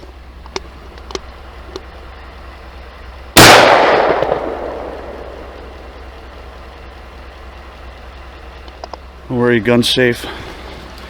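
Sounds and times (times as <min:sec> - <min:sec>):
shotgun blast with echo: 0:03.4 - 0:06.4
faint clicks: 0:08.5 - 0:09.1.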